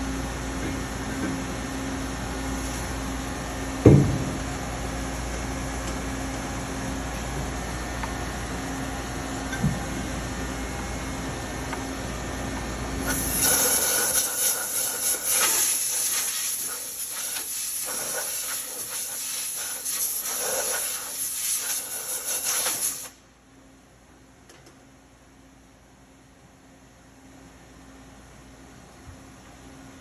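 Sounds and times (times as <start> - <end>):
lathe cutting hiss: 13.0 - 23.2.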